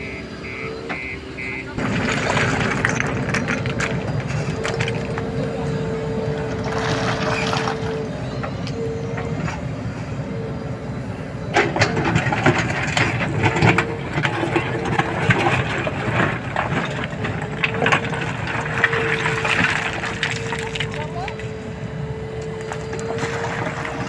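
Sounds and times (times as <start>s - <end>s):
diesel engine running: 0.0s - 24.0s
engine whine: 0.0s - 24.0s
stones clattering: 1.8s - 5.4s.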